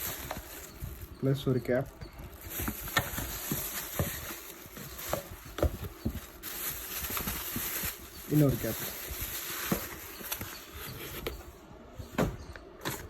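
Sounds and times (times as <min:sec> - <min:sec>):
plastic parts clicking and knocking: 0:01.9 - 0:11.4.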